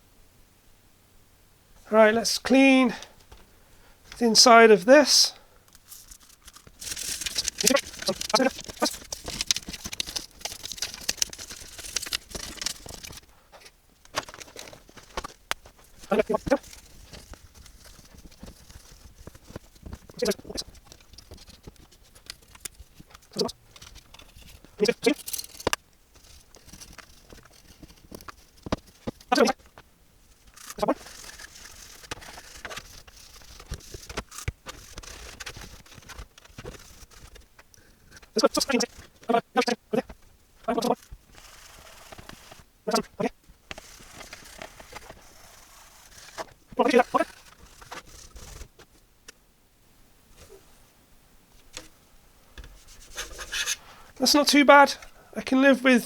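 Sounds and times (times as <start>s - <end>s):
scrubbing plastic case: 5.8s - 13.3s, 14.1s - 48.8s.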